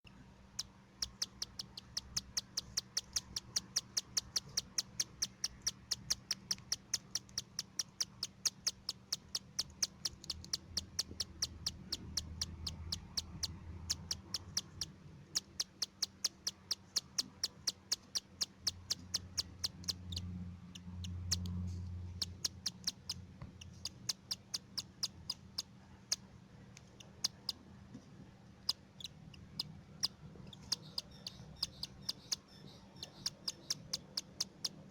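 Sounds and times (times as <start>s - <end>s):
low steady hum: 0.0s - 34.9s
chicks begging calls: 28.6s - 34.8s.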